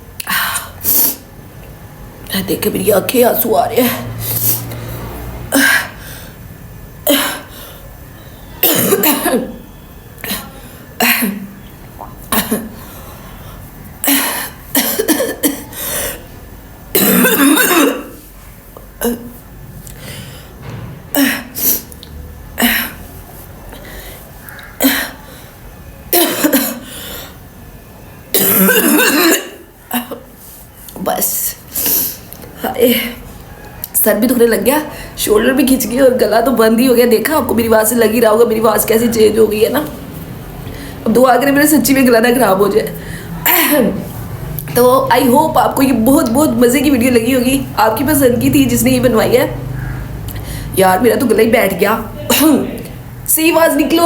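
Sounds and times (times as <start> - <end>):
woman coughing: 7.0 - 7.5, 8.6 - 9.6, 10.3 - 11.5, 12.3 - 12.8, 14.0 - 16.2, 16.9 - 18.2, 26.1 - 26.9, 28.3 - 30.3
woman clearing throat: 8.6 - 9.6, 14.0 - 15.8, 16.9 - 18.2, 26.1 - 26.9, 28.4 - 30.3.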